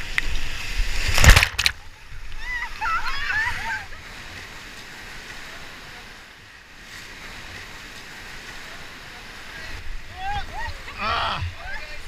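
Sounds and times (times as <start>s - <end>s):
whitewater river rushing: 7.0s - 12.0s.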